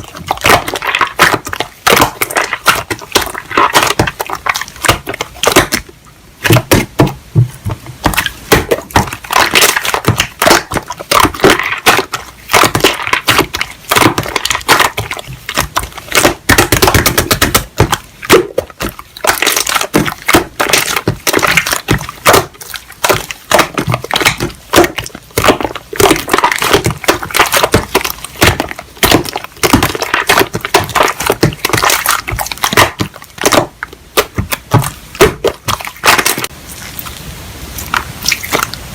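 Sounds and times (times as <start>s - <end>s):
slime clicking and popping: 8.0s - 36.5s.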